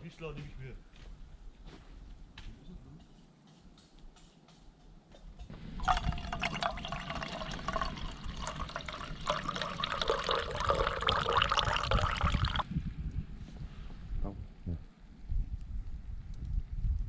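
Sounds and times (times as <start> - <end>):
water pouring and splashing: 5.5 - 12.6.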